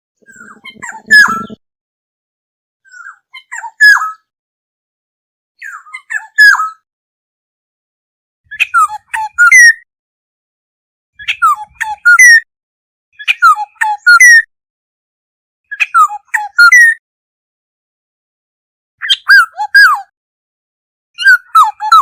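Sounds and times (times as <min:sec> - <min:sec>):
oriole calling: 0:00.2 - 0:01.6.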